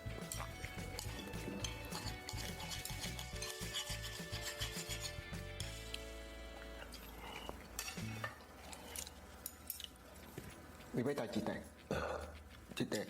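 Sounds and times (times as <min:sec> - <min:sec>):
utensils clinking against pots: 0:00.0 - 0:05.2, 0:06.8 - 0:10.6.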